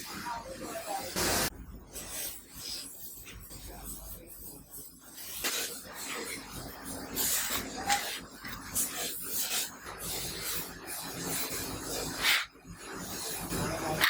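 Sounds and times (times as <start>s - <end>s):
scraping and rubbing strokes: 0.0s - 14.0s.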